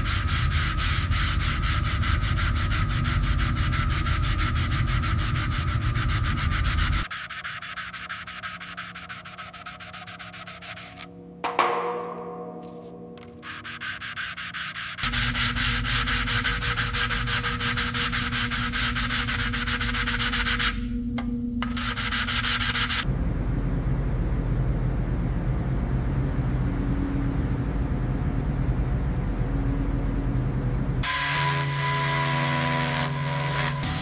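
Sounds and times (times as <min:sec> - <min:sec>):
steady hum: 0:00.0 - 0:31.0
power sander scratching: 0:13.4 - 0:20.8, 0:31.0 - 0:34.0.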